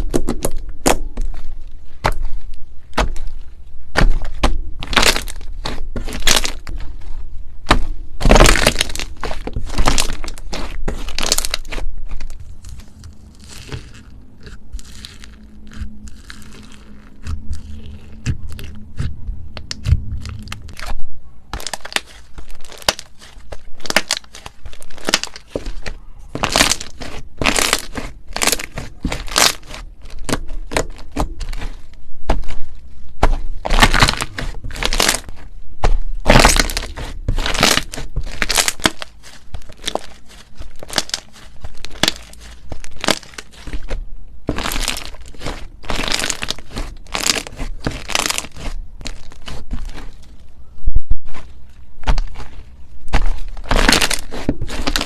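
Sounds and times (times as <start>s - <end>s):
slime crackling when squeezed: 2.1s - 6.9s, 7.6s - 32.7s, 33.6s - 35.4s, 36.2s - 50.4s, 52.0s - 55.0s.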